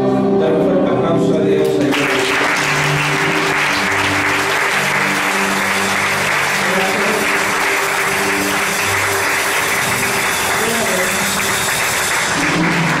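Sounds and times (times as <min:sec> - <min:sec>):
held instrumental chords: 0:00.0 - 0:13.0
congregation applauding: 0:01.8 - 0:13.0.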